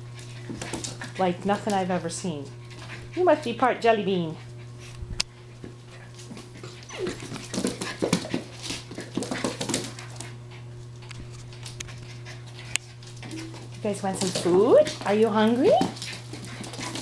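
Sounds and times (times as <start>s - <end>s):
steady low hum: 0.0s - 17.0s
puppies whimpering: 6.6s - 7.3s.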